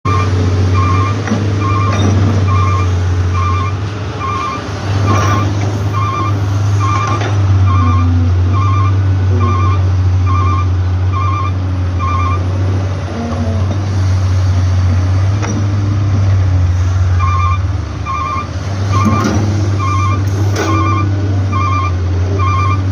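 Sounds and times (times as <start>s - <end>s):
diesel engine running: 0.0s - 22.9s
back-up alarm beeping: 0.1s - 12.5s, 17.2s - 22.9s.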